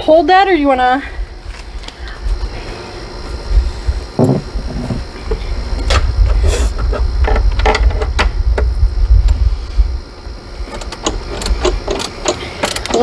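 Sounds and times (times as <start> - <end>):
wind rumble on microphone: 1.0 - 11.9.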